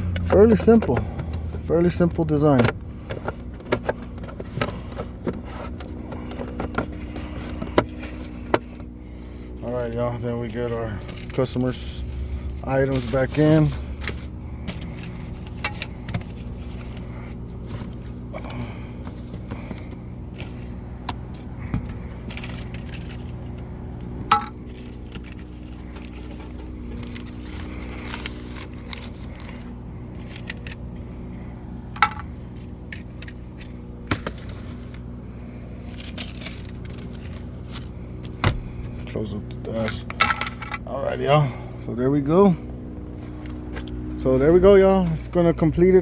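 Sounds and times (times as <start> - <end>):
steady low hum: 0.0 - 46.0
small items clicking and rattling: 21.3 - 23.6, 35.8 - 37.9.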